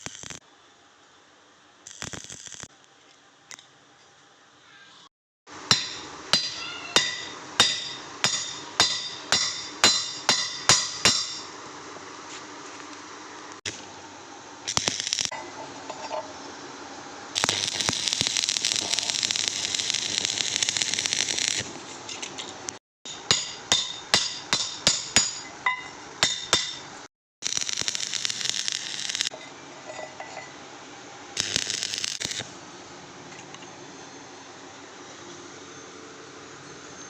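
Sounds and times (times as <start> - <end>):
welding arc crackling hiss: 0.0 - 0.4, 1.8 - 2.8, 14.6 - 15.3, 17.3 - 22.8, 27.4 - 29.3, 31.4 - 32.6
hammer striking metal pipe: 5.7 - 11.5, 23.1 - 26.9.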